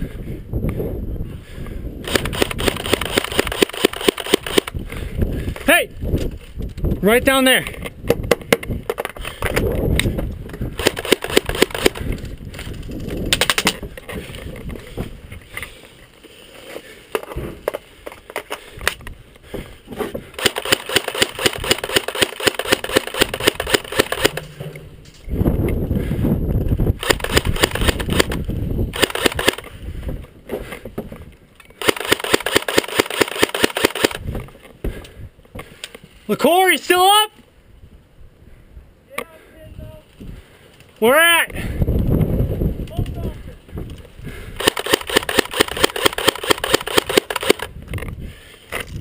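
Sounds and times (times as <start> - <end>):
airsoft rifle firing bursts: 2.1 - 4.7, 10.8 - 12.1, 20.4 - 24.5, 27.0 - 28.4, 29.0 - 29.6, 31.8 - 34.2, 44.6 - 47.7
rustling movement: 7.6 - 36.3.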